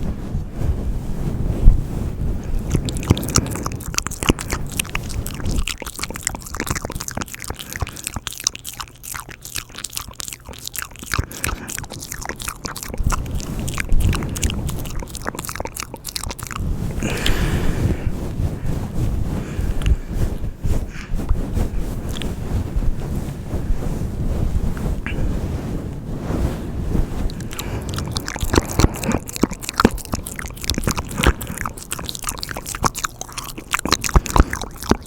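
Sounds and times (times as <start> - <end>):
wet lip and tongue clicks: 2.6 - 17.5, 22.1 - 22.3, 27.3 - 35.0
breathy hiss: 16.6 - 18.7.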